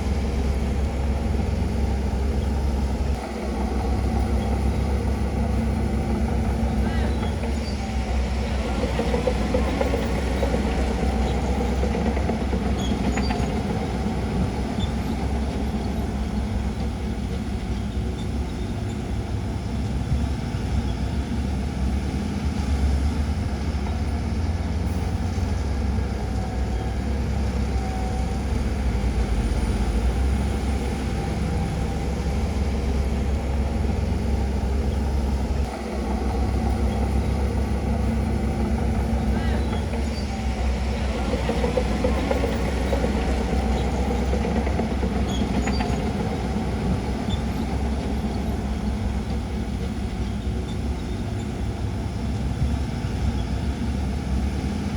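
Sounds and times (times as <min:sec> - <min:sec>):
bulldozer diesel engine rumbling: 0:00.0 - 0:54.9.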